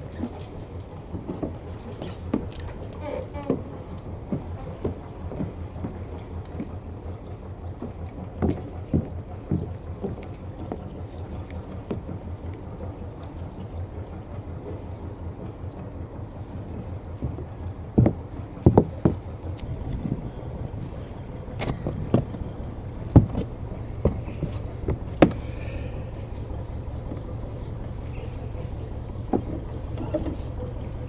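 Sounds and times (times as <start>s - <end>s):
marine engine running: 0.0s - 31.0s
short knocks and clatters: 16.6s - 31.0s.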